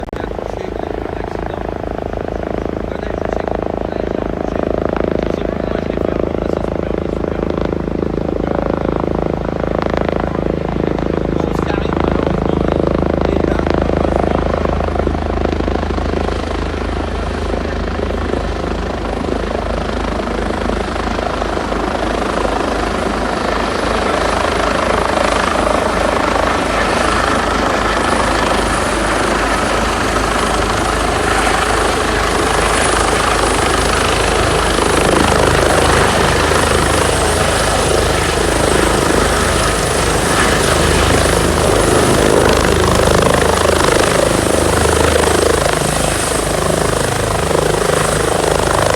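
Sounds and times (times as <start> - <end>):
helicopter rotor beat: 0.0 - 48.9
high turbine whine: 0.0 - 48.9.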